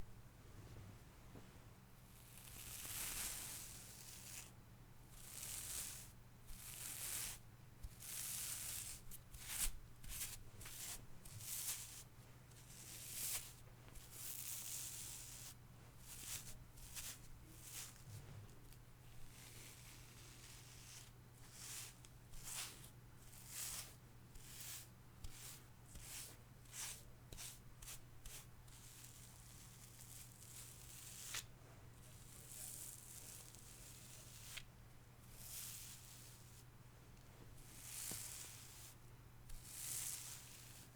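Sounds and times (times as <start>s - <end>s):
faint low hum: 0.0s - 2.2s
hair brush strokes: 8.1s - 12.1s, 12.7s - 18.1s, 19.3s - 31.5s, 32.1s - 34.7s, 35.3s - 36.7s, 37.6s - 40.9s.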